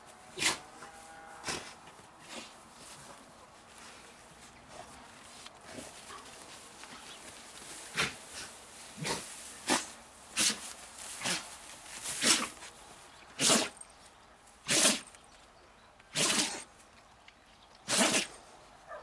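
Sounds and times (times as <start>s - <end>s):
dog sneezing: 13.4s - 13.8s, 14.7s - 15.0s, 16.2s - 16.6s, 17.9s - 18.4s.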